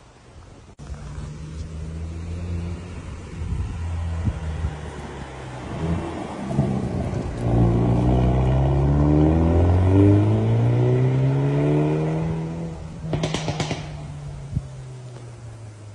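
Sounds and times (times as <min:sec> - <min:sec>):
car engine accelerating: 0:00.8 - 0:15.9
exhaust pops and crackles: 0:05.7 - 0:09.2, 0:13.0 - 0:15.3.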